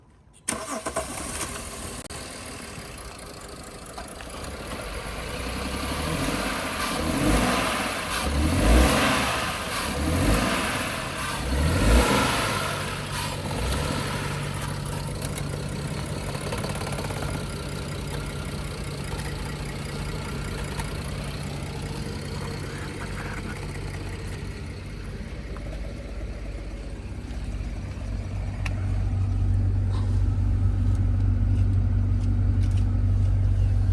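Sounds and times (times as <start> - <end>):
car engine misfiring and revving: 0.5 - 33.9.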